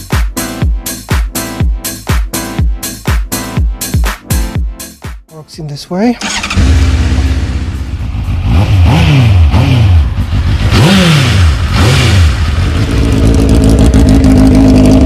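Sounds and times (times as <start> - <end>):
motorcycle engine idling and revving: 6.2 - 15.0.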